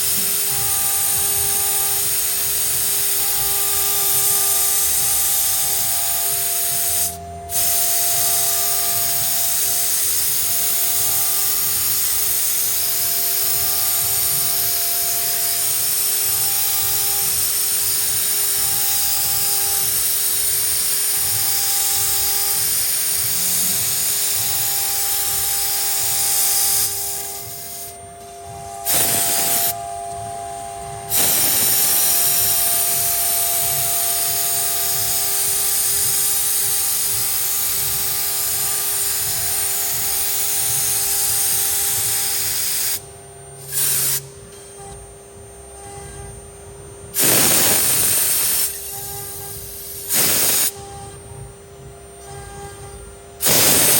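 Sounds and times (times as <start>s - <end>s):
router spindle cutting: 0.0s - 43.0s.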